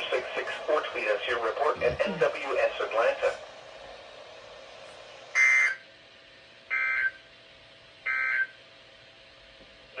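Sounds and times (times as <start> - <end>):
faint radio hiss: 0.0 - 3.9.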